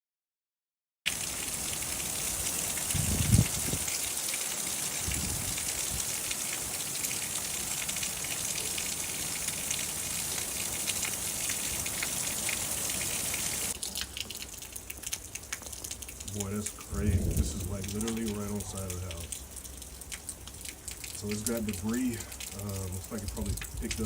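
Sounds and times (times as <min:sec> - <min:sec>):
heavy rain falling: 0:01.1 - 0:24.0
low thud: 0:17.0 - 0:17.9.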